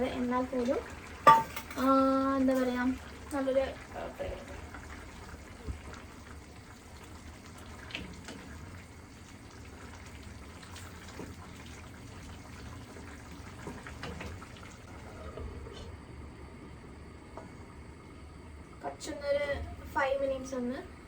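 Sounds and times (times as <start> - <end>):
curry bubbling in a pan: 0.0 - 15.8.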